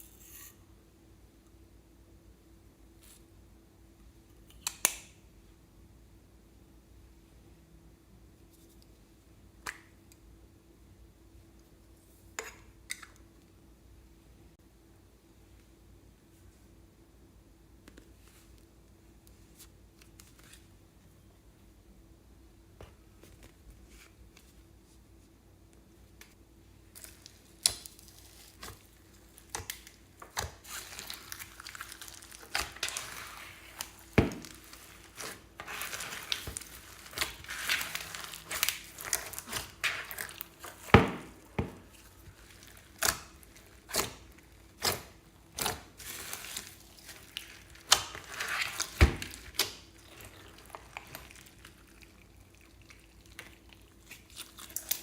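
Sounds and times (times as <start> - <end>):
slime crinkling and crunching: 26.9 - 55.0.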